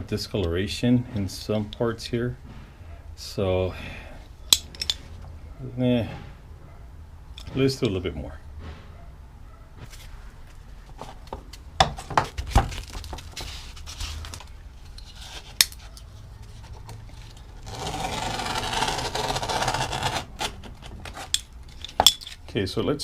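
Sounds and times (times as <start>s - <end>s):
abrasive scraping on metal: 0.7s - 6.9s, 16.5s - 22.4s
metal tools clinking: 4.4s - 5.3s, 21.2s - 22.6s.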